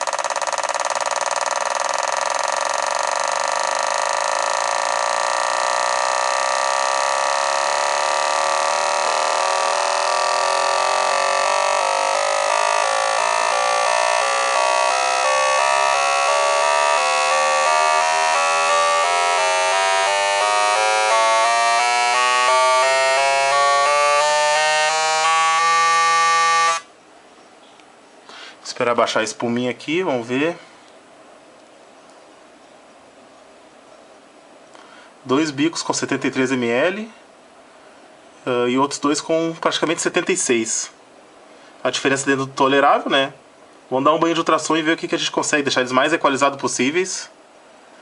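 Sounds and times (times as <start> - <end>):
fuel injectors buzzing: 0.0 - 26.9.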